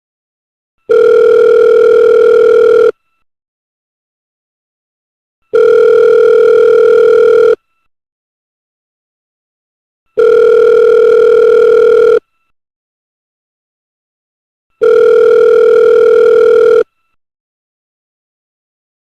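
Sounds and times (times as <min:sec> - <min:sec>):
telephone ringing: 0:00.9 - 0:03.0, 0:05.5 - 0:07.6, 0:10.2 - 0:12.2, 0:14.8 - 0:16.9.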